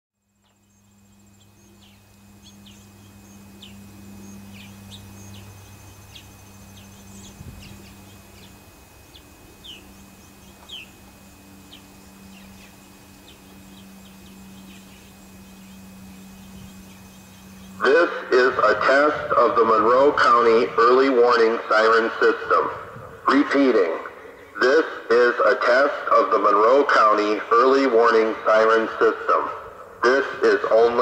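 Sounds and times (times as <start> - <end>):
faint insect trill: 0.2 - 19.1
steady low hum: 0.2 - 31.0
birds chirping: 0.4 - 20.4, 22.6 - 25.0.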